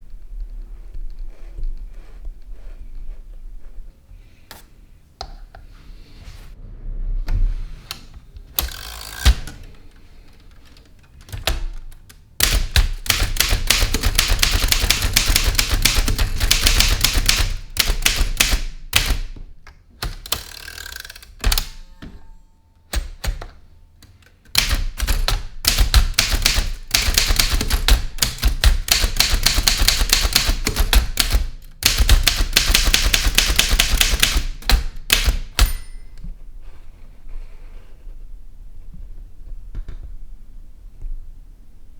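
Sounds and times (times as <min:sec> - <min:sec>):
manual typewriter keystrokes: 0:08.6 - 0:19.4, 0:20.0 - 0:21.9, 0:22.9 - 0:36.1.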